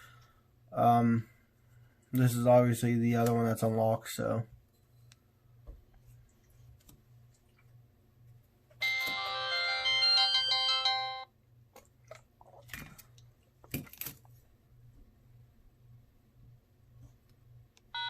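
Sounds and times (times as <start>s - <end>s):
phone chiming melody: 8.8s - 11.3s.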